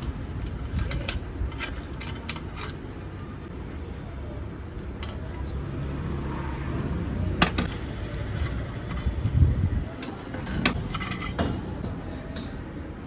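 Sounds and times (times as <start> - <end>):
metal tools clinking on engine: 0.0 - 5.7, 7.4 - 9.3, 9.9 - 11.5.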